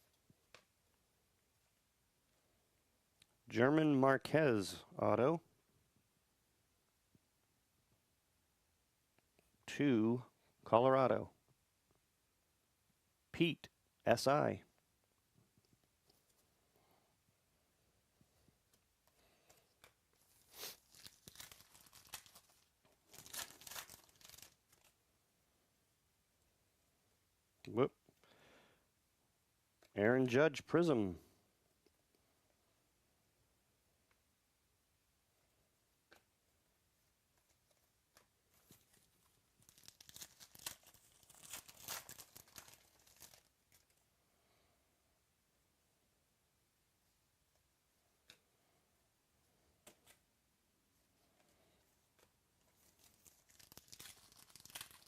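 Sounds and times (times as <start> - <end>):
wrapper tearing and crinkling: 20.4 - 25.0, 38.6 - 44.0, 52.8 - 55.0.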